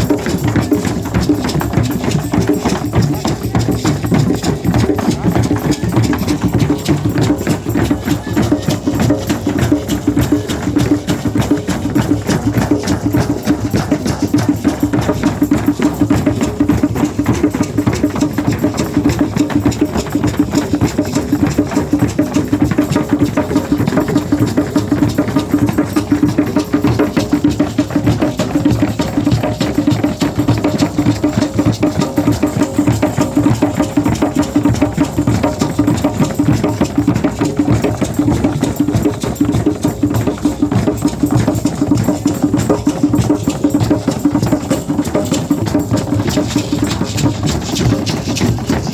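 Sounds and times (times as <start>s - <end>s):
drum beaten in fast rhythm: 0.0s - 48.9s.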